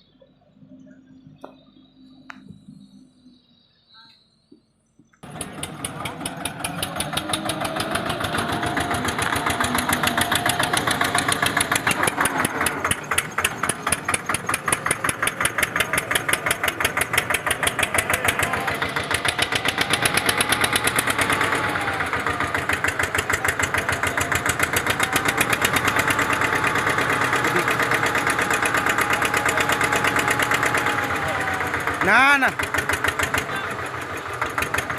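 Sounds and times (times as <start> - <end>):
faint wavering whine: 0.0 - 5.2
diesel engine knocking: 5.2 - 34.9.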